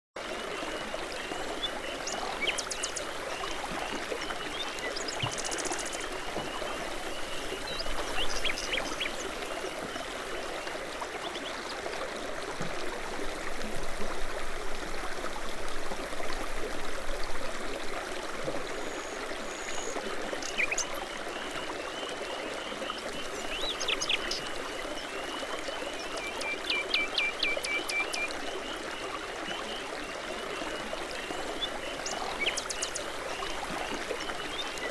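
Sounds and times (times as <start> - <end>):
brook water trickling over stones: 0.2 - 34.9
songbirds chirping: 29.5 - 34.9.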